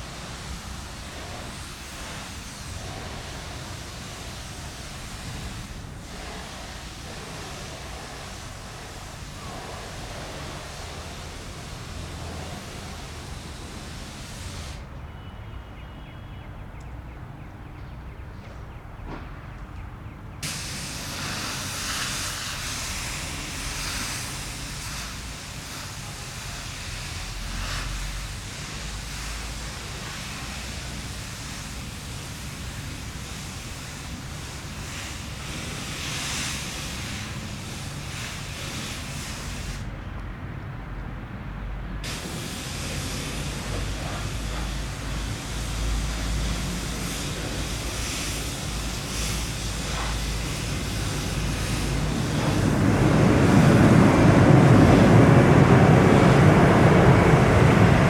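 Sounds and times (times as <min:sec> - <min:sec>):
jet engines roaring: 0:42.0 - 0:58.0.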